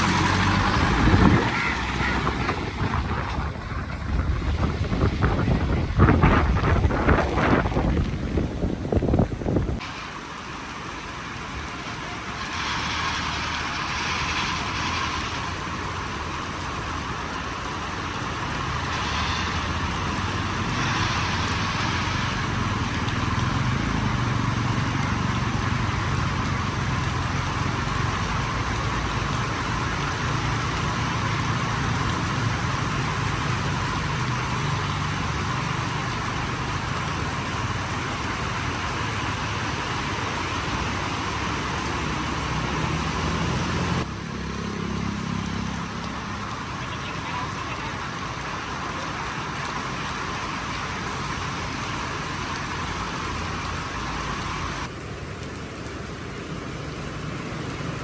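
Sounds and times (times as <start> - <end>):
low rumble: 0.0 - 9.8
heavy rain falling: 0.0 - 58.0.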